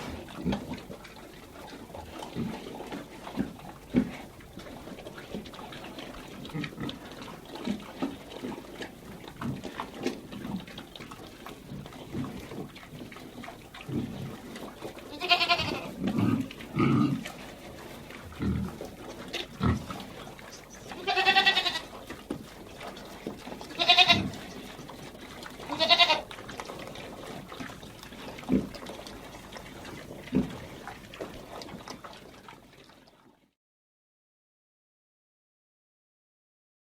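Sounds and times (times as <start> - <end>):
pig grunts: 1.7 - 4.4, 6.3 - 7.9, 13.7 - 17.6, 18.2 - 22.0, 23.7 - 24.6, 28.2 - 29.0, 30.2 - 30.9
sheep bleating: 15.1 - 15.9, 20.9 - 21.9, 23.7 - 24.3, 25.7 - 26.2.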